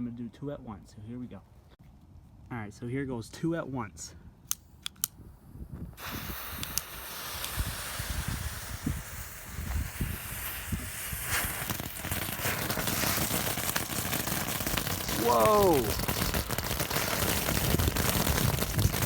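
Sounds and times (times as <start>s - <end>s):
sharp clicks: 4.5s - 5.2s, 6.5s - 7.6s
fireworks hissing and crackling: 5.8s - 19.0s.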